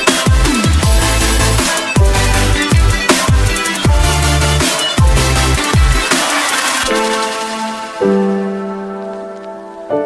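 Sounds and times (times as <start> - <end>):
deep bass line: 0.0 - 6.1
heavy kick drums: 0.0 - 6.9
electronic dance music: 0.0 - 9.0.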